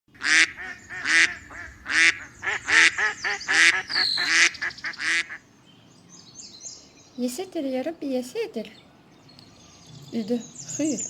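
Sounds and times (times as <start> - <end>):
duck quacking: 0.2 - 5.4.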